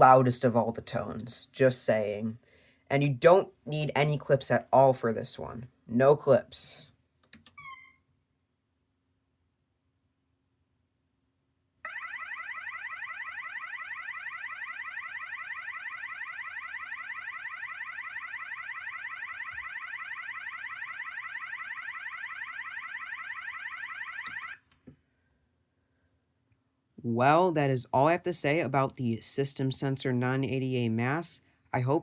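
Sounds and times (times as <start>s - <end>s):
fire alarm horn warble tone: 11.9s - 24.6s.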